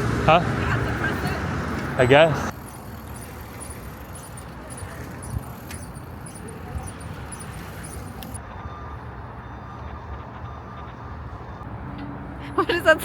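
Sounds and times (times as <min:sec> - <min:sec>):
street traffic rumble: 0:00.0 - 0:13.0
faint high ticks: 0:02.5 - 0:08.4.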